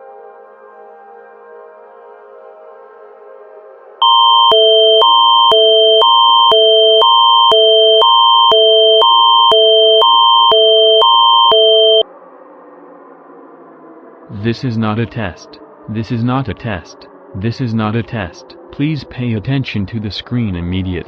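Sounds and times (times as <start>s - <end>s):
emergency alert two-note tone: 4.0s - 12.0s.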